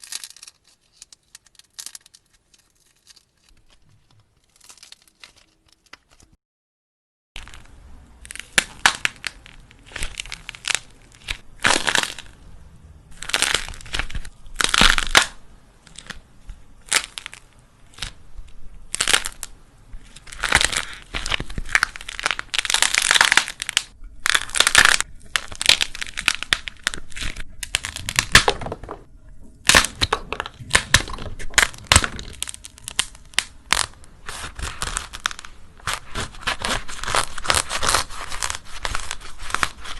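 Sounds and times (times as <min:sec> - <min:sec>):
dried clay cracking by hand: 0:00.0 - 0:06.4, 0:07.4 - 0:12.4, 0:13.1 - 0:39.9.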